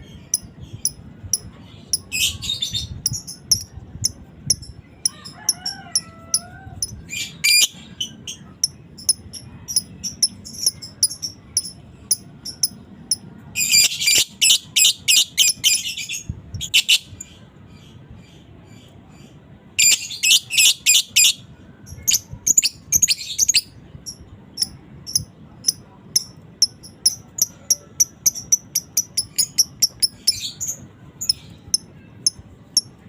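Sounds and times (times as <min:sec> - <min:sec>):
lovebird chattering: 0:03.0 - 0:15.9, 0:22.0 - 0:32.9.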